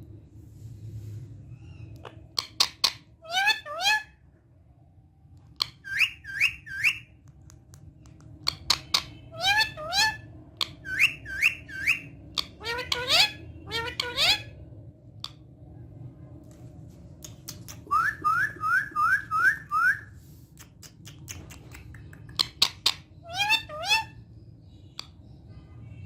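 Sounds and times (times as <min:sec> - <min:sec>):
parrot whistled chirps: 0:05.6 - 0:07.1, 0:09.0 - 0:14.5, 0:17.7 - 0:20.1.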